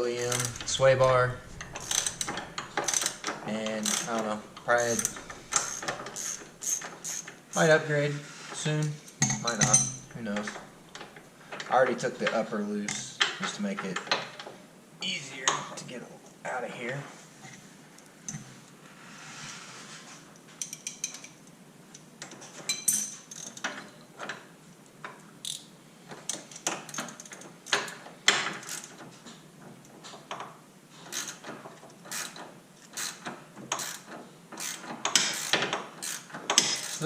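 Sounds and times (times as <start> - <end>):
metal tools clinking: 0.0 - 7.7, 9.1 - 10.8
ratchet wrench strokes: 1.6 - 7.3, 28.6 - 28.9, 31.1 - 31.4, 32.1 - 37.0.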